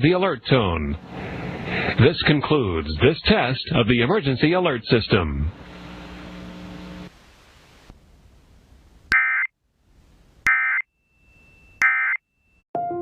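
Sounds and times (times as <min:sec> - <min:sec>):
low steady hum: 0:05.2 - 0:09.1.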